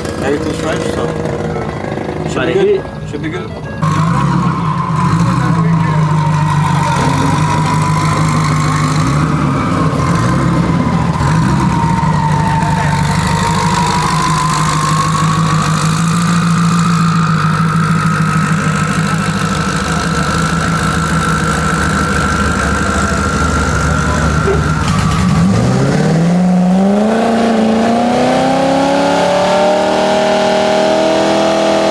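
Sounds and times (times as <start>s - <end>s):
truck engine idling: 0.0s - 31.9s
turbo whine rising: 3.8s - 31.9s.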